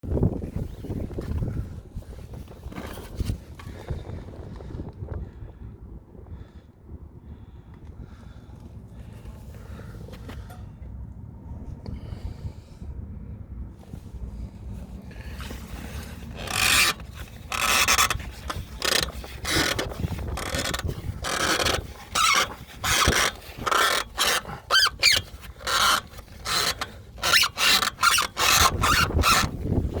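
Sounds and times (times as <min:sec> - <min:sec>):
suspension squeaking: 0:13.8 - 0:30.0.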